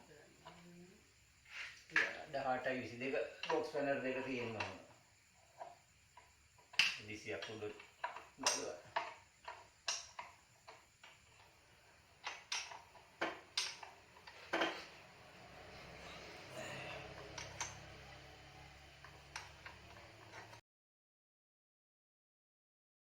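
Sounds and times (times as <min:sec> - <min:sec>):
light steady hum: 0:00.0 - 0:20.6
metal tools clinking: 0:15.7 - 0:18.3.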